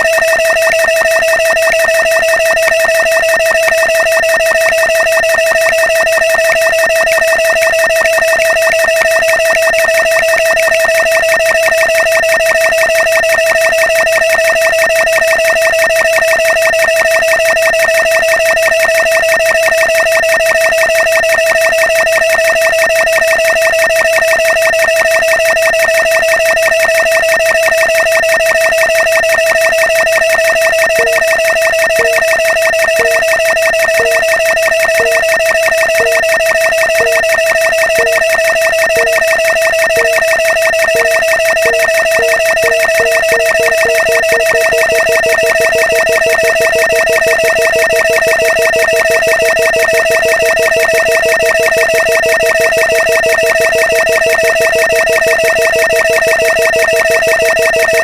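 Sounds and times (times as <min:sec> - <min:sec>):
loud electronic buzzing tone: 0:31.0 - 0:58.0.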